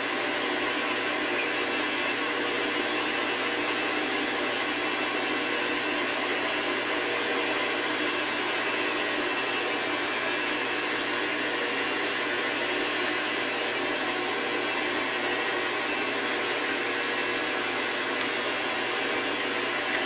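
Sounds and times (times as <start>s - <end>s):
metal lathe running: 0.0s - 20.0s
drill bit cutting steel: 0.1s - 1.7s, 5.5s - 5.9s, 6.6s - 10.6s, 12.3s - 16.1s, 19.8s - 20.0s.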